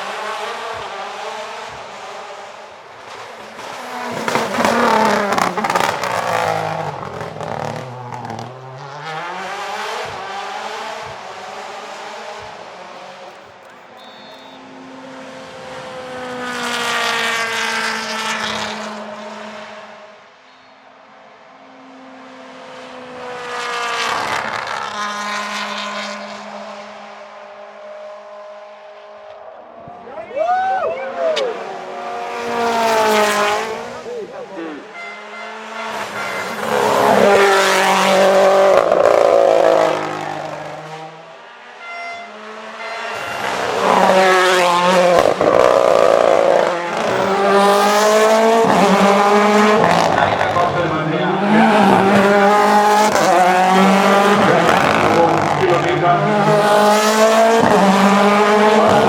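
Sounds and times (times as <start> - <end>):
rally car engine passing: 0.0 - 13.6, 14.6 - 20.4, 21.1 - 59.0.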